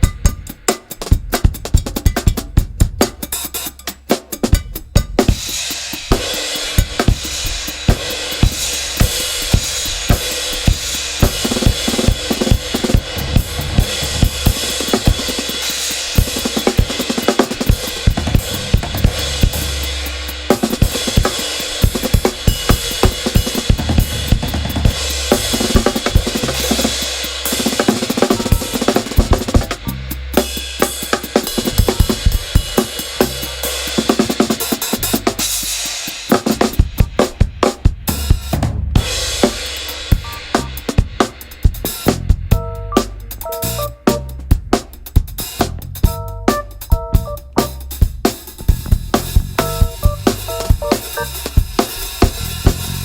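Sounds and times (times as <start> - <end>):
drum kit playing: 0.0 - 53.0
soul band playing: 11.2 - 33.4, 39.3 - 41.4, 42.0 - 53.0.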